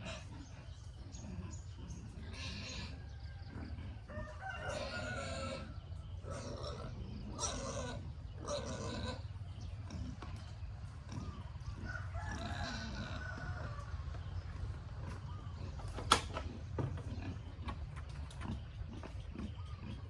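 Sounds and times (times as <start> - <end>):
farm animal call: 0.0 - 20.0.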